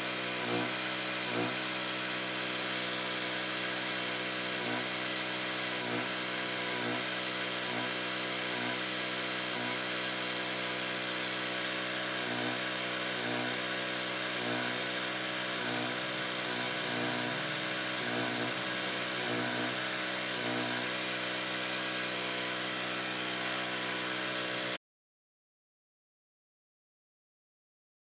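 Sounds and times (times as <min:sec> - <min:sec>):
generator engine running: 0:00.1 - 0:24.8
welder hissing: 0:15.5 - 0:23.8.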